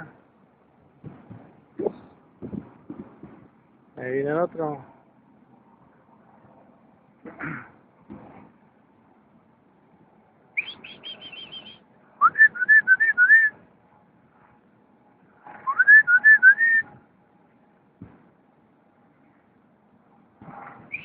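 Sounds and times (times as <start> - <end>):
whistled calls: 10.6 - 13.6, 15.6 - 17.0.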